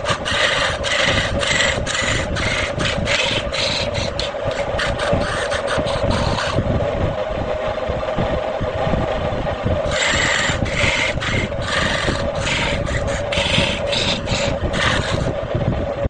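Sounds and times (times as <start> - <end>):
turning tool scraping wood: 0.0 - 6.6, 9.8 - 15.4
wood lathe humming: 0.0 - 16.0.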